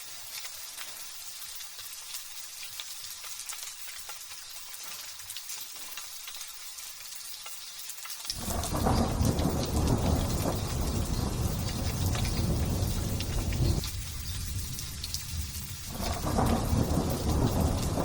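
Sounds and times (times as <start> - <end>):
light drizzle pattering: 0.0 - 18.0
thunder rumbling: 8.4 - 18.0.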